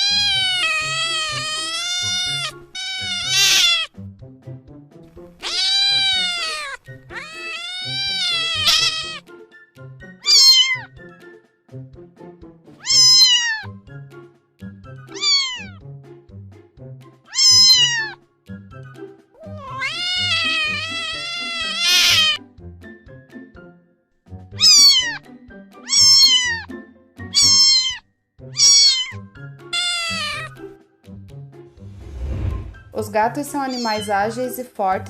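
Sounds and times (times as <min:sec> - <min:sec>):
cat meowing: 0:00.0 - 0:03.9, 0:05.4 - 0:09.2, 0:10.2 - 0:10.9, 0:12.8 - 0:13.8, 0:15.1 - 0:15.8, 0:17.3 - 0:18.2, 0:19.4 - 0:22.4, 0:24.6 - 0:25.2, 0:25.8 - 0:26.7, 0:27.3 - 0:30.6, 0:33.6 - 0:34.2
soft background music: 0:00.0 - 0:35.0.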